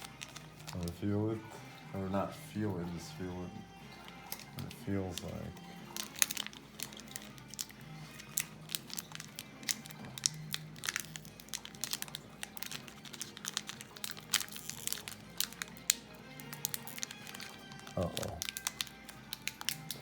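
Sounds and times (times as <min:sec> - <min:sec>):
foil wrappers crinkling: 0:00.0 - 0:20.0
quiet background music: 0:00.0 - 0:20.0.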